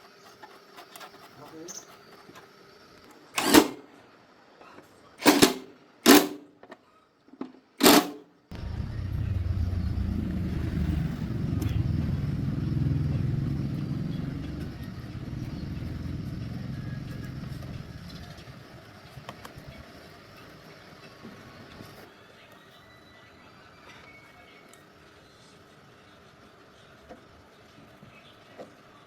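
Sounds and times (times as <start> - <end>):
short loud bursts: 3.4 - 3.9, 5.2 - 6.5, 7.8 - 9.8
motorbike engine rumbling: 8.5 - 18.8.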